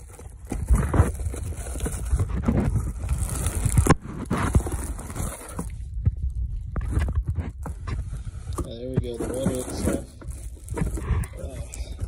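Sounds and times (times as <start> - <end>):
cardboard scraping and rustling: 0.0 - 12.0.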